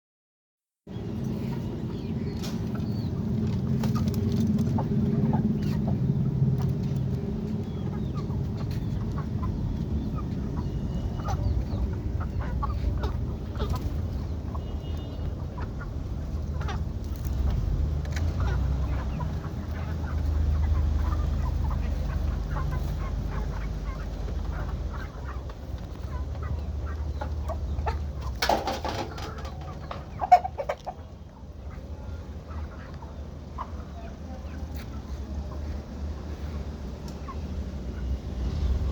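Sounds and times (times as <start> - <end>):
steady low rumble: 0.9 - 28.4
chickens clucking: 0.9 - 38.9.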